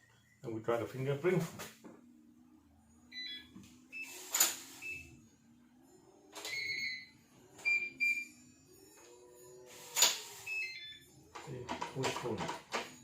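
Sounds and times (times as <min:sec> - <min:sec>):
smart lock beeping and chiming: 0:03.0 - 0:05.2, 0:06.2 - 0:11.4.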